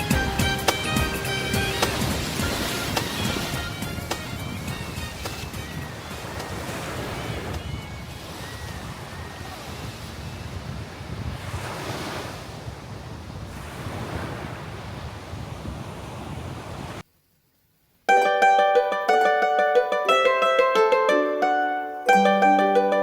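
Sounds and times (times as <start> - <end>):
ocean waves washing ashore: 0.0 - 17.0.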